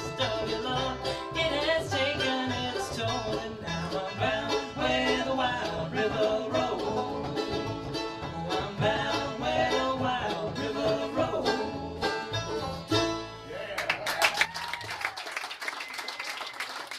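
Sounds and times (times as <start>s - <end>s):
bluegrass band playing: 0.0s - 14.5s
audience applause: 13.7s - 16.9s.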